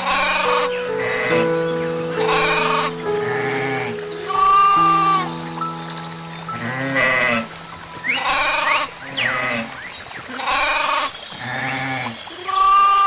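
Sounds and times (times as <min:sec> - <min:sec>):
background music: 0:00.0 - 0:10.2.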